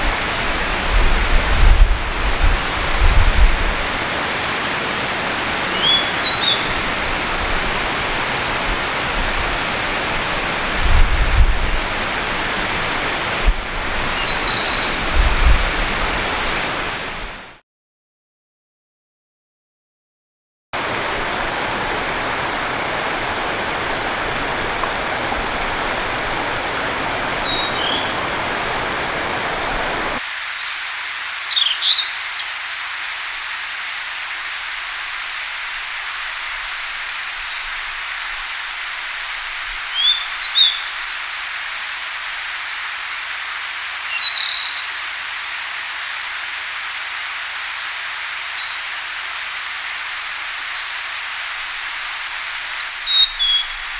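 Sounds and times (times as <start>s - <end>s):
running water rushing: 0.0s - 17.6s, 20.8s - 53.9s
bird whistling song: 5.3s - 7.0s, 13.6s - 15.0s, 27.2s - 28.6s, 31.2s - 32.5s, 35.5s - 41.2s, 43.6s - 45.0s, 52.6s - 53.8s
faint high bird chirps: 5.3s - 7.0s, 13.7s - 15.0s, 27.2s - 28.6s, 52.7s - 53.8s.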